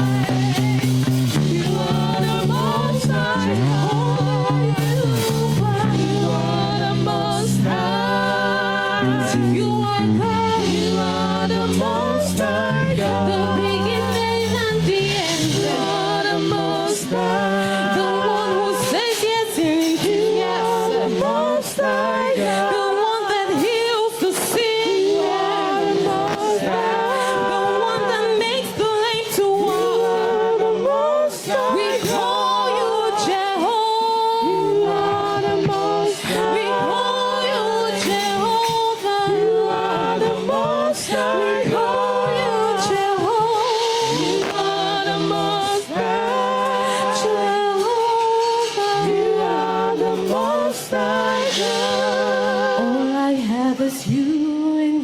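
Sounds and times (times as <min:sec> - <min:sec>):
sustained low chords: 0:00.0 - 0:15.0
person singing with vibrato: 0:00.0 - 0:55.0.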